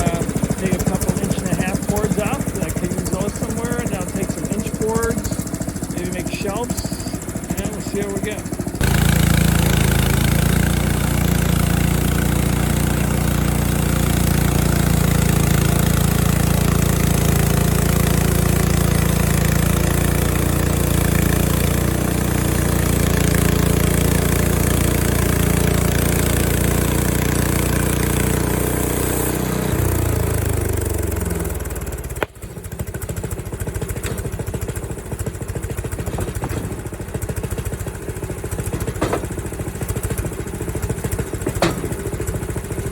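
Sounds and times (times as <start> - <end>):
small gas engine running: 0.0 - 42.9
band blade cutting log: 32.1 - 32.8, 33.8 - 34.8, 35.6 - 37.6, 38.5 - 40.2, 41.0 - 42.4.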